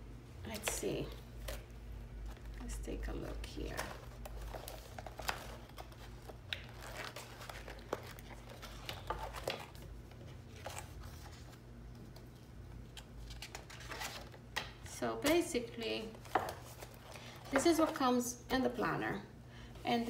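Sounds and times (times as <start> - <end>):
paper pages rustling: 1.4 - 14.4, 16.0 - 18.0.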